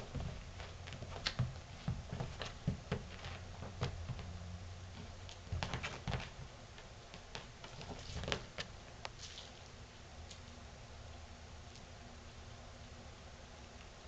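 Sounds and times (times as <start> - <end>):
kitten paws pattering on hard floor: 0.0 - 9.6.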